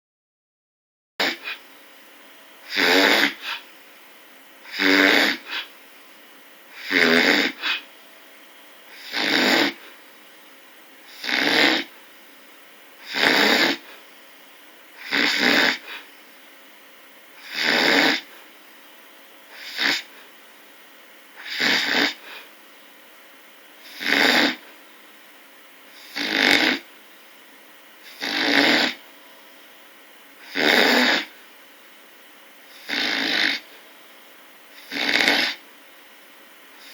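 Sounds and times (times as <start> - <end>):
person snoring: 1.2 - 1.6, 2.6 - 3.7, 4.6 - 5.8, 6.7 - 7.9, 8.9 - 10.0, 11.1 - 12.0, 13.0 - 14.0, 15.0 - 16.1, 17.4 - 18.4, 19.5 - 20.3, 21.4 - 22.6, 23.8 - 24.7, 25.9 - 26.9, 28.0 - 29.0, 30.4 - 31.4, 32.7 - 33.8, 34.7 - 35.6.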